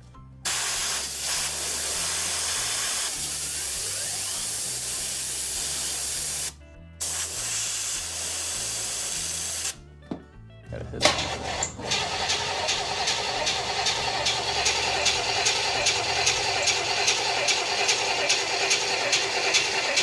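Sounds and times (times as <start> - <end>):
pressurised spray hissing: 0.5 - 9.8.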